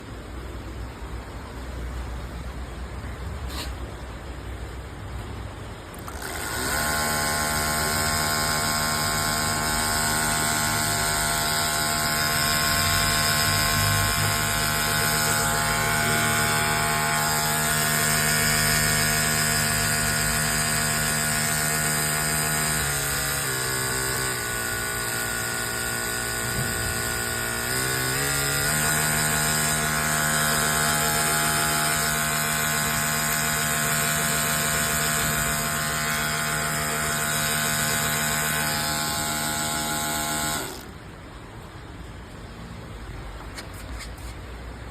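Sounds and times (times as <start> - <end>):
power sprayer motor humming: 5.8 - 41.1.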